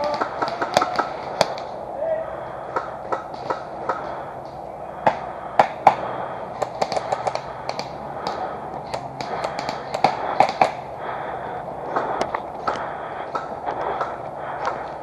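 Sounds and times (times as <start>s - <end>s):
airsoft guns firing: 0.0s - 1.8s, 5.0s - 10.8s.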